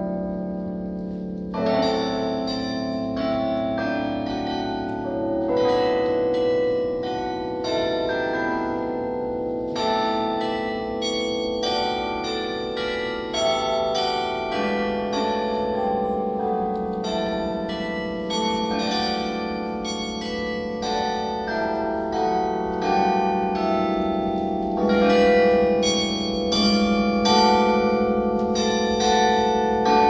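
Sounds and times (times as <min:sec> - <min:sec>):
church bells ringing: 0:00.0 - 0:30.0.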